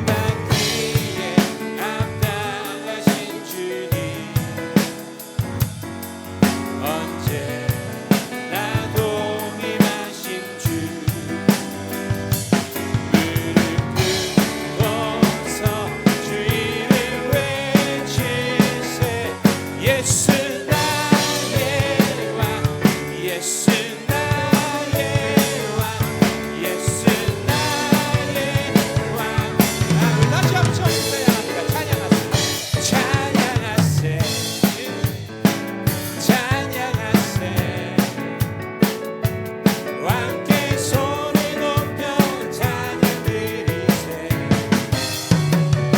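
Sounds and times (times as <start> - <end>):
worship band music: 0.0 - 45.9.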